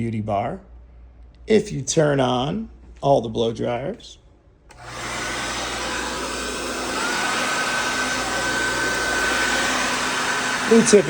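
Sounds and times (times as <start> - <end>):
blow dryers running: 4.7 - 11.0.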